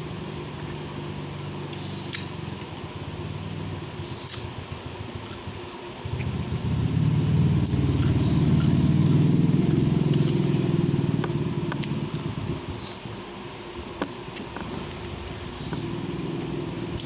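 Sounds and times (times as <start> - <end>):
vehicle engine passing by: 6.0 - 12.6, 14.7 - 17.0.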